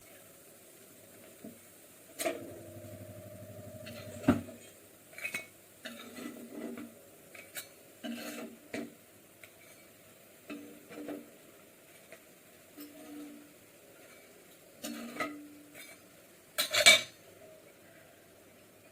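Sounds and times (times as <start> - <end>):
ringing hum: 2.3 - 4.6.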